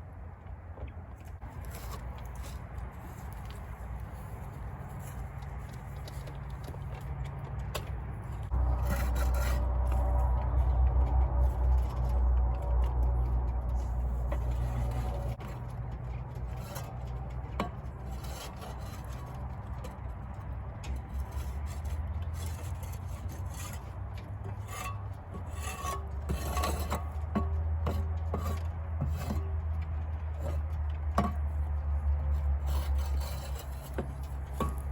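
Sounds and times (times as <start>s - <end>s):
steady low rumble: 1.1s - 26.3s
rubbing and scraping on wood: 1.4s - 34.9s.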